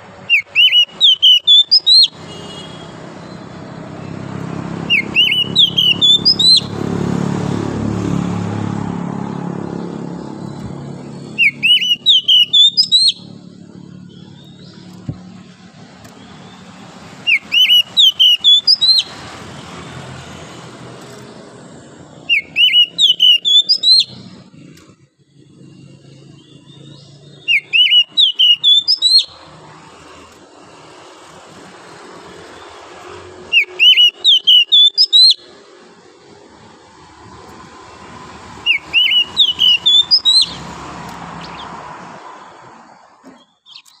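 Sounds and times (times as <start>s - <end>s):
bird singing whistled phrases: 0.3s - 3.4s, 4.9s - 6.7s, 11.2s - 13.3s, 17.2s - 19.1s, 22.2s - 24.2s, 26.9s - 29.4s, 33.5s - 35.5s, 38.6s - 40.7s.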